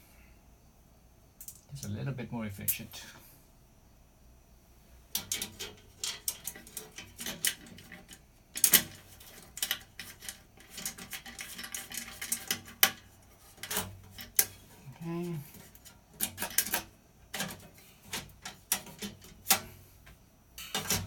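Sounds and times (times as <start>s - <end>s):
hand tools and metal clanking: 5.1s - 21.0s.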